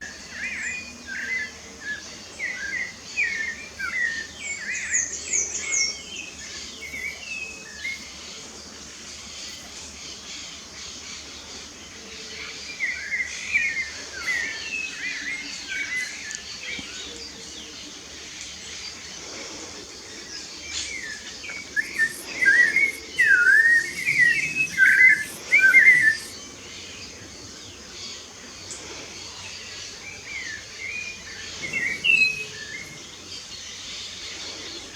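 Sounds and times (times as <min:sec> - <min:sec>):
songbirds chirping: 0:00.0 - 0:34.9
steady background hiss: 0:00.1 - 0:34.9.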